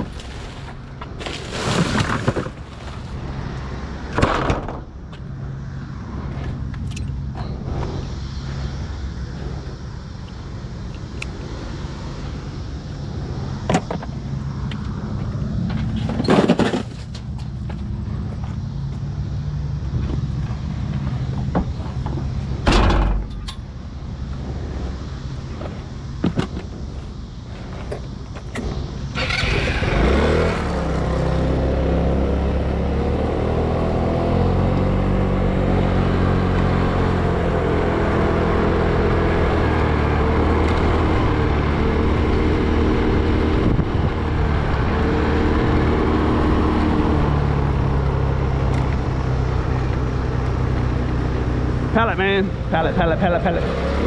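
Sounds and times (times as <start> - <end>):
car engine starting and running: 25.0 - 54.0.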